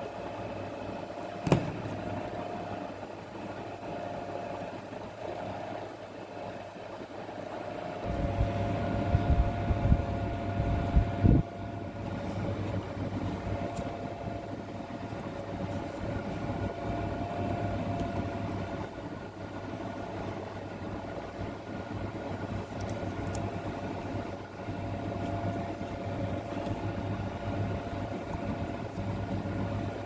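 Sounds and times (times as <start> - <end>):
machine hum with whine: 0.0 - 30.0
deeper machine hum: 8.0 - 30.0.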